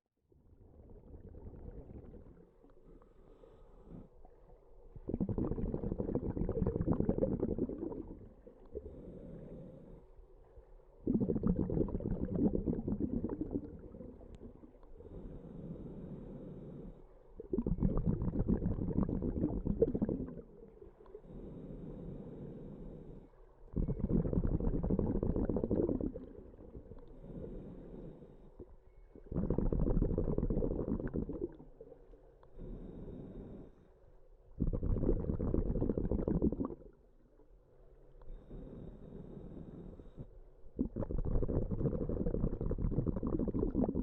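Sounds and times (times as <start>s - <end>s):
exhaled bubbles: 0.4s - 3.1s, 3.8s - 10.0s, 11.0s - 15.3s, 16.8s - 21.6s, 23.7s - 33.6s, 34.4s - 37.1s, 40.0s - 44.0s
scuba regulator breathing: 1.8s - 4.3s, 5.2s - 10.2s, 11.1s - 31.8s, 32.5s - 36.9s, 38.2s - 44.0s.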